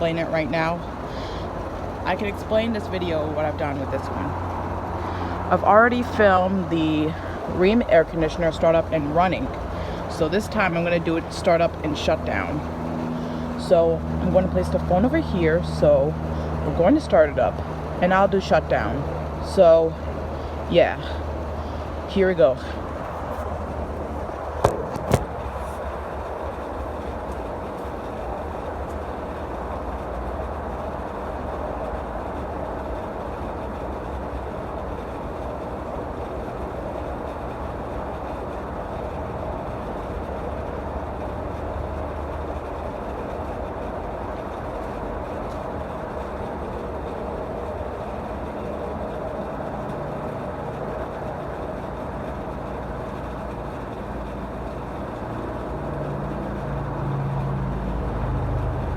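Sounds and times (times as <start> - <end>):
machine hum with low rumble: 0.0 - 58.9
phone set down knocks: 24.6 - 25.3.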